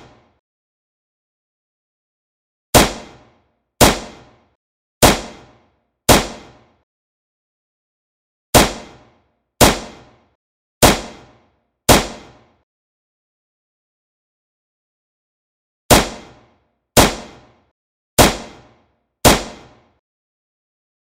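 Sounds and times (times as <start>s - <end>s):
pistol shots: 2.8s - 4.4s, 5.0s - 6.6s, 8.6s - 10.2s, 10.8s - 12.4s, 15.9s - 16.4s, 17.0s - 17.5s, 18.2s - 19.8s.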